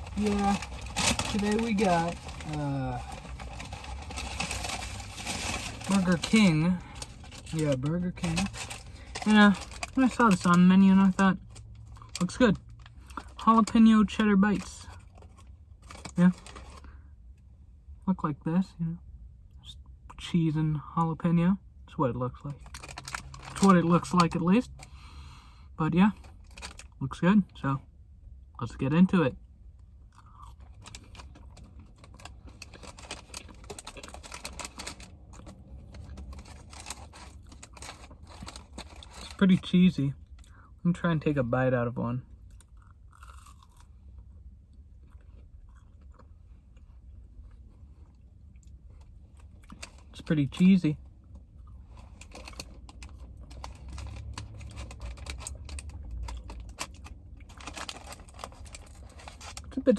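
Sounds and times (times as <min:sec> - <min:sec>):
paper packaging crackling: 0:00.0 - 0:13.8, 0:22.6 - 0:24.8, 0:26.4 - 0:26.9, 0:30.7 - 0:39.7, 0:49.4 - 0:50.7, 0:51.9 - 0:59.9
person chewing: 0:42.5 - 0:43.9, 0:45.0 - 0:46.9.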